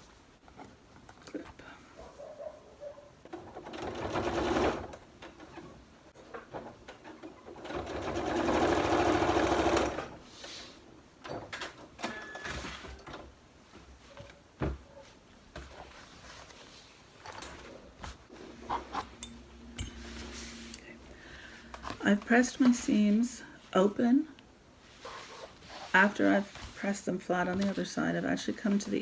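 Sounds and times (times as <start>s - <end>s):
sewing machine stitching: 3.3s - 5.7s, 6.6s - 10.2s.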